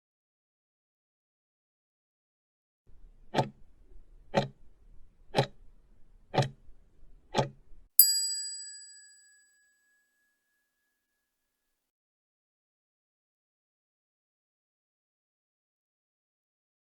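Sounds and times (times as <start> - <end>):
clock ticking: 4.3 - 4.6, 5.4 - 5.6, 6.4 - 6.6
bright bell ding: 8.0 - 10.3.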